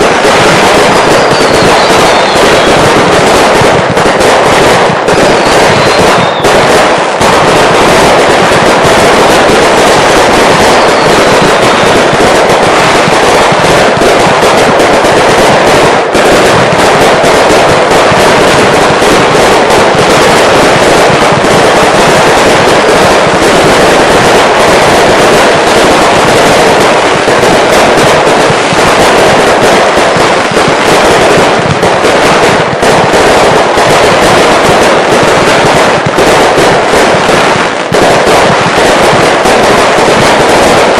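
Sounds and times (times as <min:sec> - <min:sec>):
fireworks bangs and crackling: 0:00.0 - 0:40.9.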